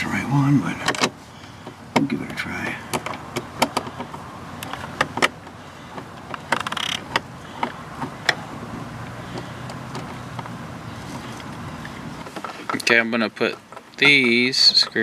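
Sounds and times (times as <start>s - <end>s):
steady low hum: 0.0s - 12.4s
plastic parts clicking and tapping: 2.9s - 8.4s
short rustle: 3.2s - 12.8s.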